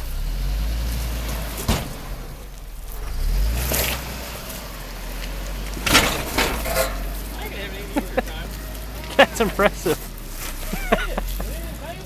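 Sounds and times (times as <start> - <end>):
off-road vehicle engine at low revs: 0.0 - 12.0.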